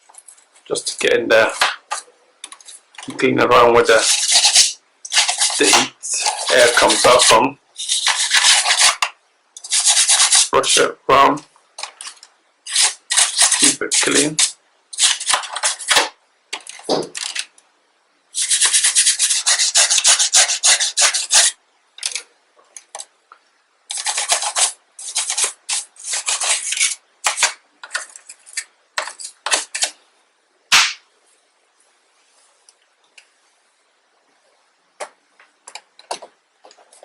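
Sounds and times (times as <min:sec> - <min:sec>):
toothbrush scrubbing plastic: 0:03.8 - 0:10.5, 0:12.0 - 0:16.0, 0:18.4 - 0:22.2, 0:23.9 - 0:29.9.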